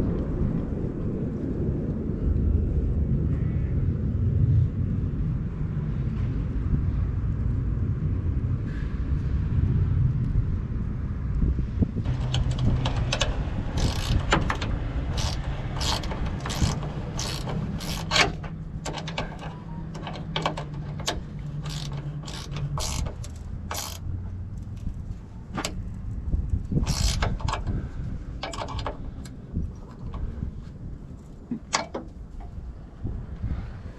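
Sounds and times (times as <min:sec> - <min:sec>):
metallic clicks and clanks: 0:12.0 - 0:26.0, 0:26.7 - 0:30.6, 0:31.2 - 0:32.6
diesel engine running: 0:12.0 - 0:32.7.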